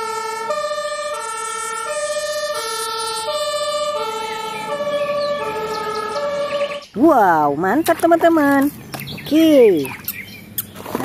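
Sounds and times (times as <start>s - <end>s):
electronic toy siren: 0.0s - 6.9s.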